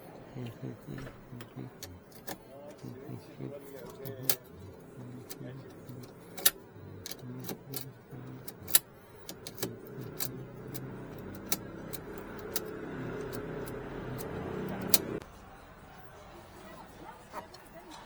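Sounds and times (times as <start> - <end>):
steady hum: 0.0 - 15.2
keys and metal parts clicking: 0.9 - 15.2.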